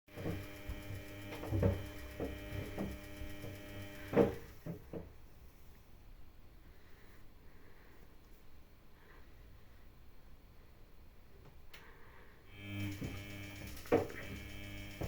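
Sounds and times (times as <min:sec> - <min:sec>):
washing machine motor hum: 0:00.1 - 0:04.9, 0:12.5 - 0:15.0.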